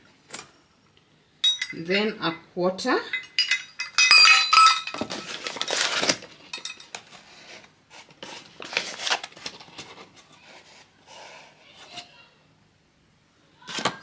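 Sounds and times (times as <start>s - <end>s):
utensils clinking against bowl: 1.4s - 2.4s, 3.0s - 7.1s
scraping rustle: 5.0s - 12.2s.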